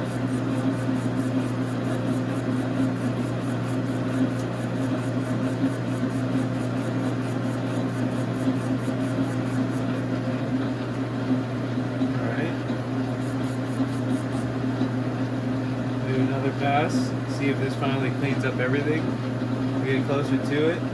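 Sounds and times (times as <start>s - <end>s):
metal lathe humming: 0.0s - 20.9s.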